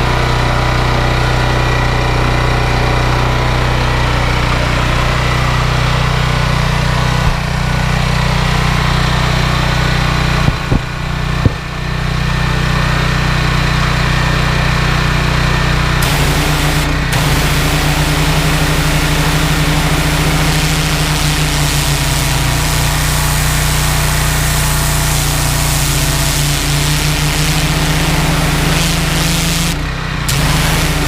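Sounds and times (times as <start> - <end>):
petrol engine running: 14.6 - 31.0
pressure washer spray hiss: 16.0 - 31.0.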